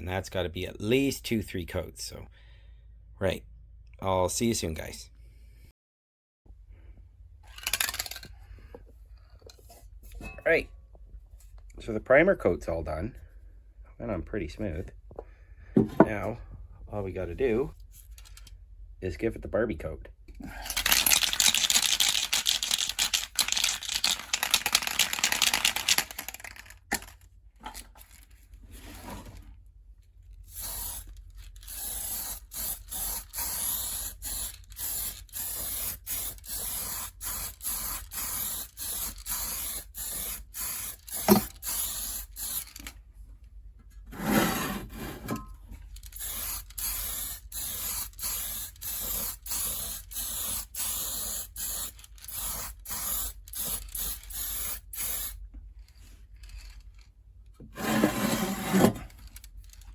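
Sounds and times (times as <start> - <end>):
spray can hissing: 30.5 - 42.7, 46.2 - 55.4.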